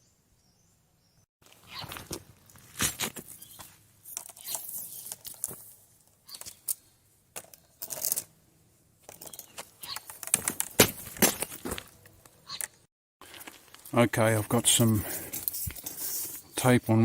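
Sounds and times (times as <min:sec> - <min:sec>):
handling rustles and scrapes: 0:01.4 - 0:08.4, 0:13.2 - 0:16.7.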